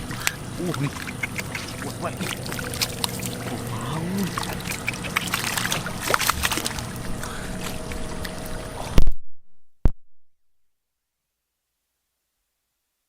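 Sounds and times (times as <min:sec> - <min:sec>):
muddy water splashing: 0:00.0 - 0:09.0.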